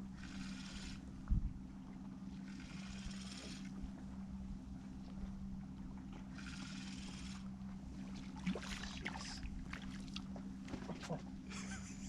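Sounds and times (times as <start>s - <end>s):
boat motor humming: 0.0s - 12.0s.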